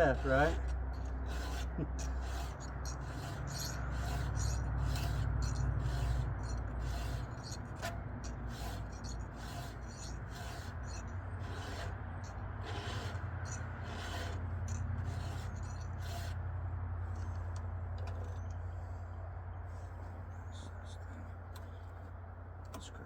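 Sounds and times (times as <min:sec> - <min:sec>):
file rasping on chainsaw chain: 0:00.0 - 0:16.4
low steady rumble: 0:00.0 - 0:23.0.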